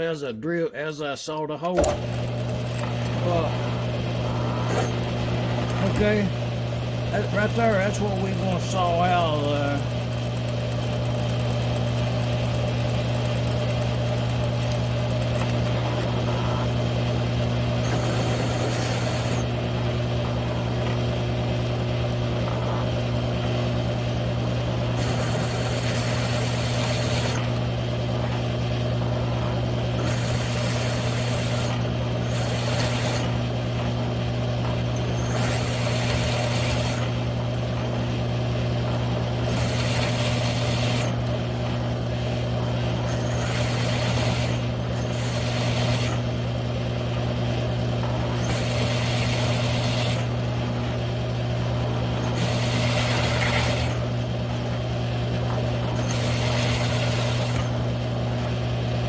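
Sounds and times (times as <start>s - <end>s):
hole saw cutting steel: 1.8s - 9.9s, 15.2s - 46.5s, 48.2s - 50.6s, 52.0s - 54.1s, 55.8s - 57.9s
drill motor humming: 1.8s - 59.0s.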